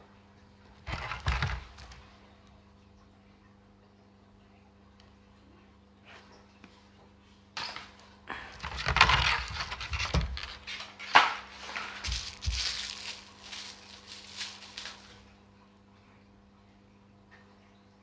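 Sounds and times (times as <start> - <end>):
plastic packaging crinkling: 11.6 - 15.3.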